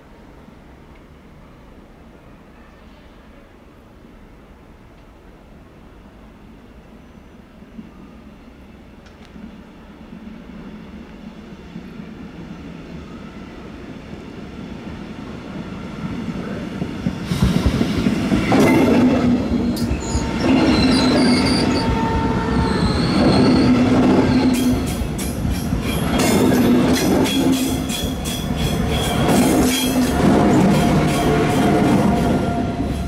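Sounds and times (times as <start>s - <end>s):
train passing: 0.0s - 33.0s
wheels squealing on rails: 17.2s - 33.0s.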